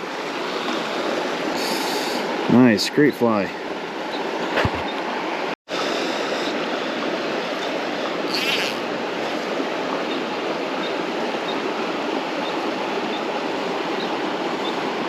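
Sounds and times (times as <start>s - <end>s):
creek water running over rocks: 0.0s - 15.0s.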